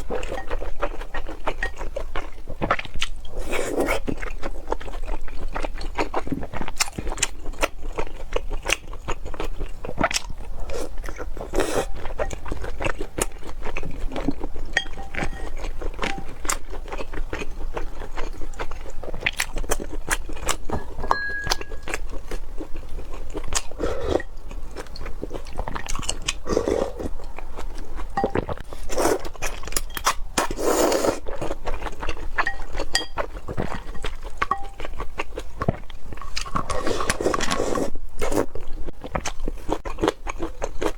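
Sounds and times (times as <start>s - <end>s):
person chewing and crunching: 0.0s - 40.9s.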